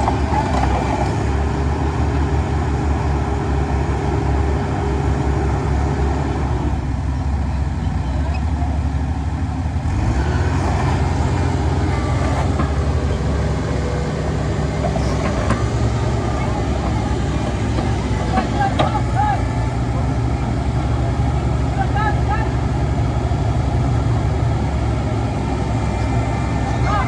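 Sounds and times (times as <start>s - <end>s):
diesel machinery running: 0.0s - 27.0s.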